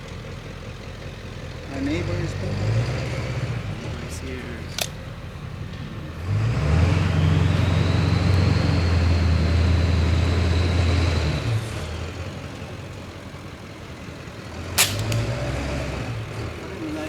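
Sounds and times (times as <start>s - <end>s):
vehicle engine droning: 0.0s - 17.0s.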